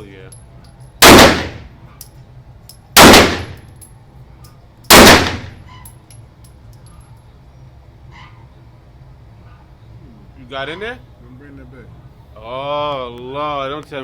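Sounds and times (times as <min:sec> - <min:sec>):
handgun shots with echo: 0:01.0 - 0:01.7, 0:03.0 - 0:03.7, 0:04.9 - 0:05.7.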